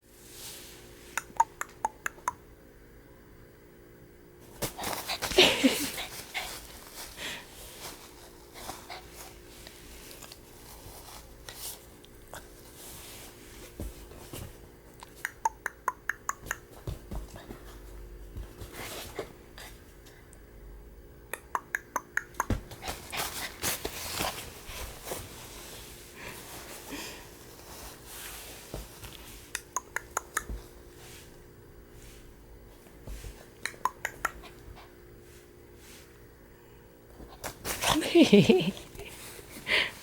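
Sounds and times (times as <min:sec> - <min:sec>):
person making sharp pops: 0:01.2 - 0:02.4, 0:15.0 - 0:17.1, 0:21.3 - 0:22.8, 0:29.5 - 0:30.6, 0:33.6 - 0:34.6
soft scuffling: 0:04.4 - 0:14.8, 0:16.6 - 0:20.1, 0:22.5 - 0:29.5, 0:30.4 - 0:33.6.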